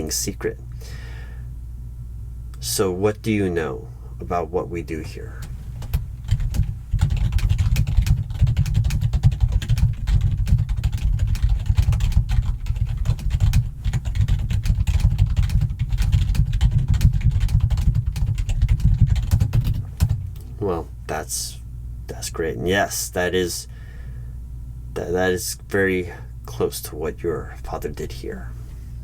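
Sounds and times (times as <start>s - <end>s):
typing on computer keyboard: 5.8s - 20.2s.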